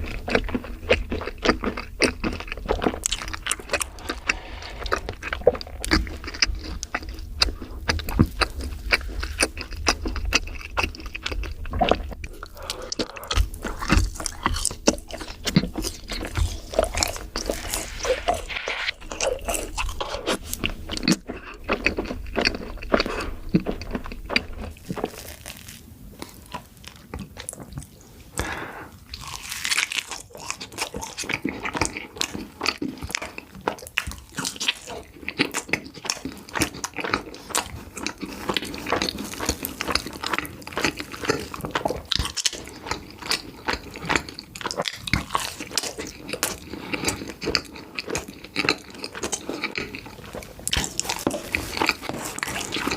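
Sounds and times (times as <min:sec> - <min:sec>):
crunchy chewing: 0:00.0 - 0:52.9
low hum: 0:02.3 - 0:25.0.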